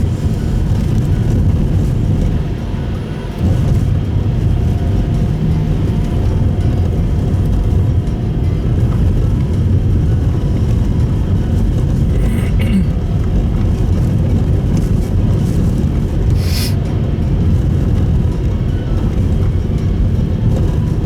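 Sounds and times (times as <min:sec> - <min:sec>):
car engine and tyres rumbling: 0:00.0 - 0:21.0
short hissing: 0:16.3 - 0:16.8.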